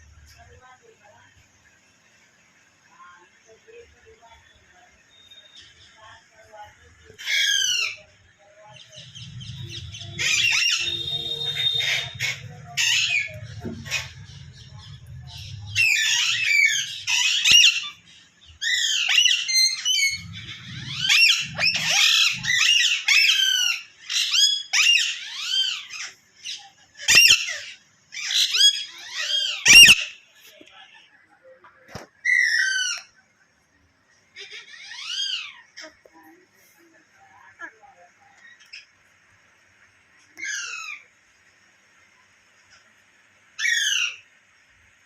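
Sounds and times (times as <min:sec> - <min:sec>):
parrot squawking and chattering: 0:07.2 - 0:08.2, 0:08.8 - 0:30.3, 0:34.3 - 0:36.1, 0:40.4 - 0:41.1, 0:43.6 - 0:44.3.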